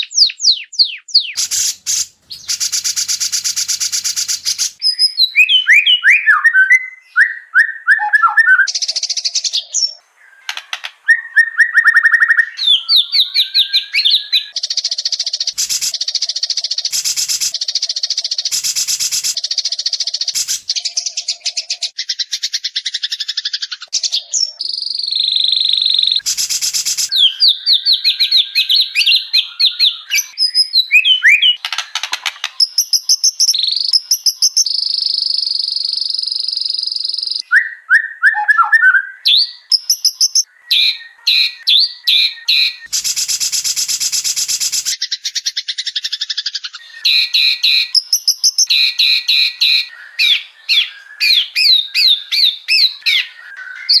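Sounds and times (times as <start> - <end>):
songbird trills and whistles: 0.0 - 54.0
harsh buzzing bird call: 15.5 - 16.0.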